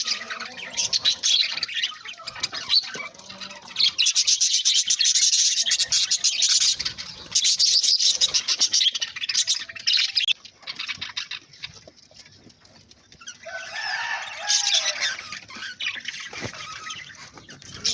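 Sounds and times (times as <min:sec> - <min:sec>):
budgerigar chirping and chattering: 0:00.0 - 0:11.9.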